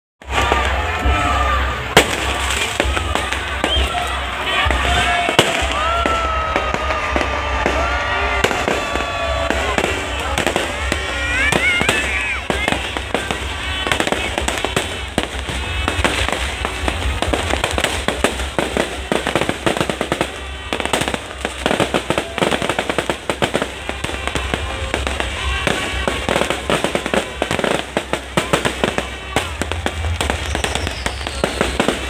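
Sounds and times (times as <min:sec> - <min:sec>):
fireworks bangs and crackles: 0:00.2 - 0:32.0
voices: 0:00.2 - 0:32.0.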